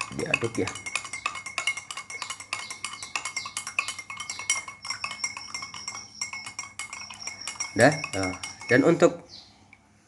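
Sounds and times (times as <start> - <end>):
spoon clinking in glass: 0.0 - 9.1.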